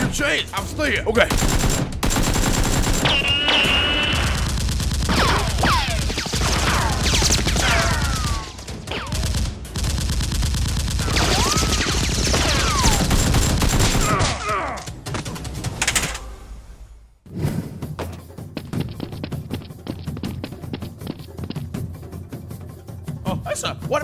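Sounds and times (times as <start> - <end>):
rapid automatic gunfire: 1.3 - 14.2.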